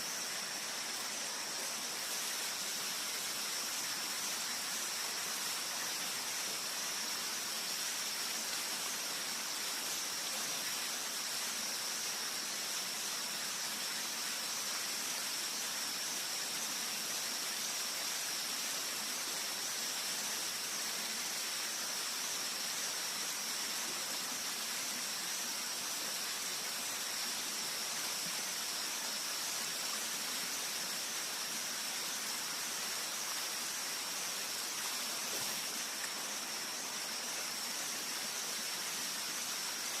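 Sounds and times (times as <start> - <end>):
constant high-pitched tone: 0.0 - 40.0.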